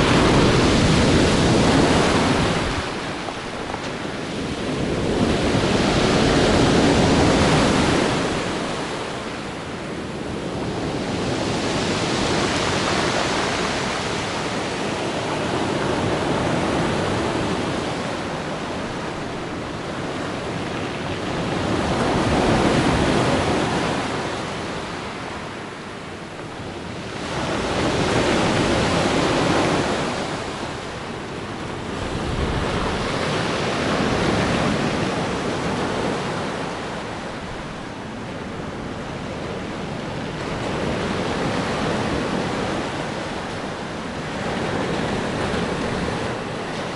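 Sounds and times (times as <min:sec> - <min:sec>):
waves washing onto shore: 0:00.0 - 0:46.9.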